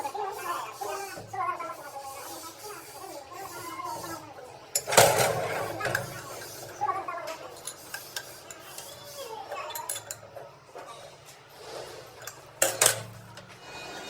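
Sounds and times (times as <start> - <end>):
metal tools clinking and scraping: 4.7 - 6.8, 7.5 - 14.0.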